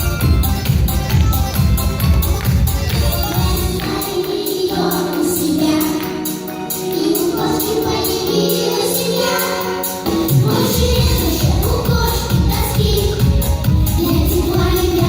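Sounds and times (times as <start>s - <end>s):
backing track with bass and beat: 0.0s - 4.0s
children singing pop song: 0.0s - 15.0s.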